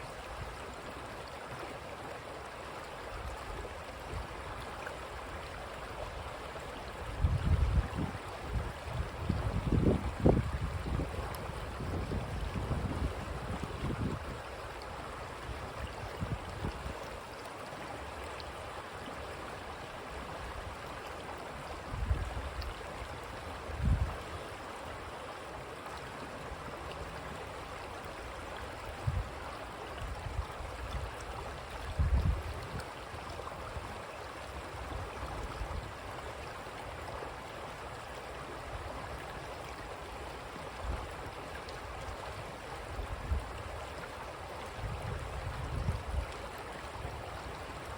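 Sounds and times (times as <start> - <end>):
creek water burbling: 0.0 - 47.9
wind buffeting microphone: 7.0 - 14.5, 23.7 - 24.2, 31.8 - 32.8, 44.7 - 46.4.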